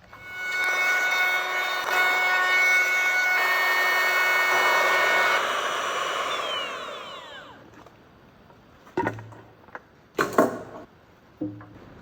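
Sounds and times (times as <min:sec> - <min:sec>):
power tool motor whining: 0:00.2 - 0:07.8.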